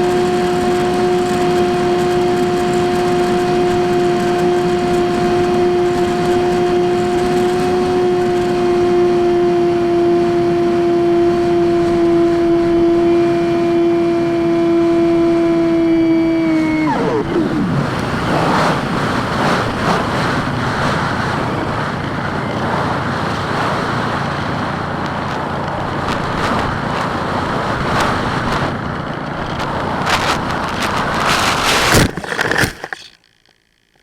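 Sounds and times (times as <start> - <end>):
wind rush of gliding plane: 0.0 - 32.1.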